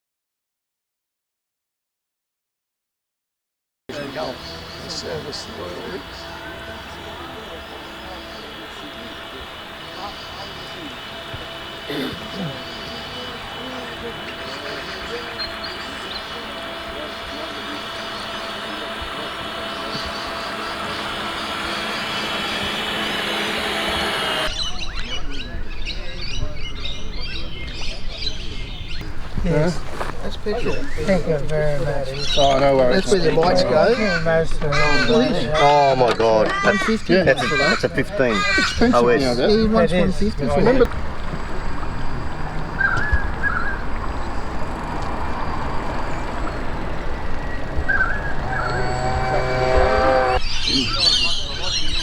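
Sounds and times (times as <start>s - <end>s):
faint steady tones: 3.9s - 24.6s, 36.7s - 52.0s
mechanical whir: 3.9s - 25.2s, 29.0s - 52.0s
birds chirping: 3.9s - 52.0s.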